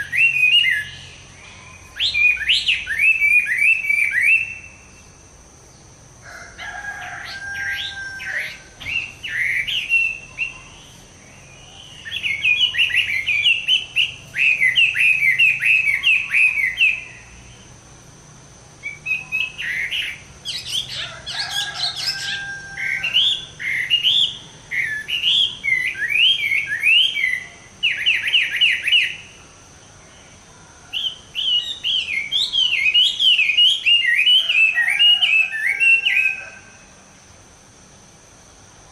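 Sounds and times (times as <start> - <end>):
bird singing whistled phrases: 0.0 - 4.9, 7.5 - 10.9, 11.5 - 17.2, 18.8 - 29.3, 31.0 - 36.6.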